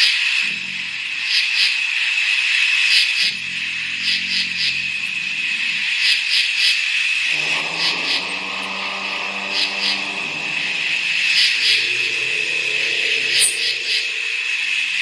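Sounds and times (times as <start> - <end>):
deep rumbling creature calls: 7.3 - 15.0
steady high buzz: 7.3 - 15.0.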